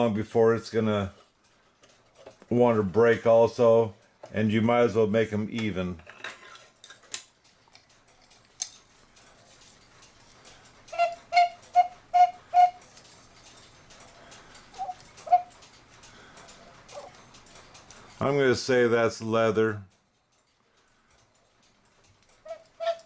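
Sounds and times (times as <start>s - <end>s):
whistle pipe toots: 10.9s - 12.8s, 14.8s - 15.5s.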